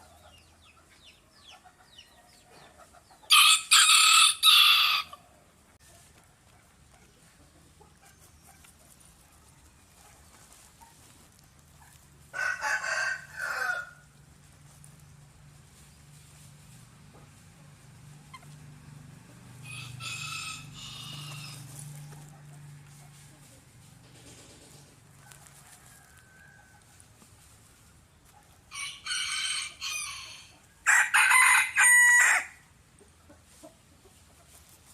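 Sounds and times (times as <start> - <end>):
rooster crowing: 3.3 - 5.2, 12.3 - 14.1, 19.6 - 21.8, 25.2 - 27.0, 28.7 - 32.6.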